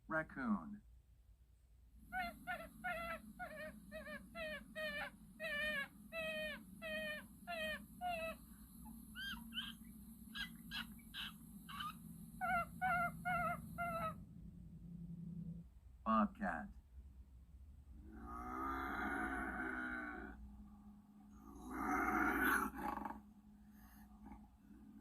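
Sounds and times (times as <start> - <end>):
raccoon chittering calls: 2.0 - 14.2, 18.0 - 20.4, 21.4 - 23.2.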